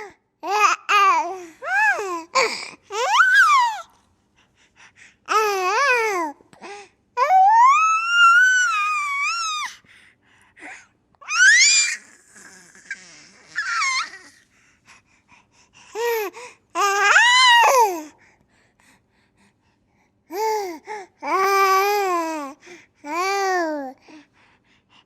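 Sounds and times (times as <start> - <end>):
baby squealing: 2.9 - 3.8, 11.3 - 14.3.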